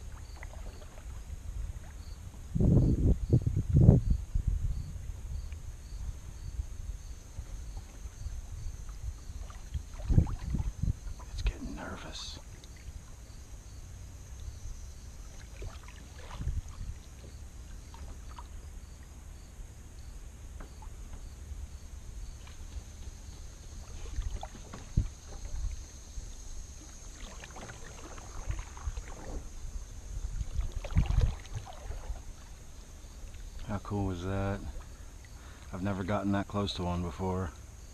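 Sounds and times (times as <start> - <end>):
water lapping at hull: 0.0 - 2.5, 6.6 - 35.9
wind on microphone: 0.0 - 12.2, 15.6 - 17.2, 23.8 - 26.9, 27.6 - 32.5
high insect drone: 0.0 - 37.9.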